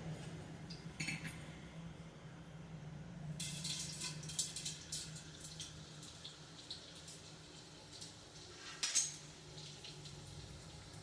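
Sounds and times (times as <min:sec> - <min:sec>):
low steady hum: 0:00.0 - 0:11.0
gum frying in oil sizzling: 0:03.3 - 0:11.0.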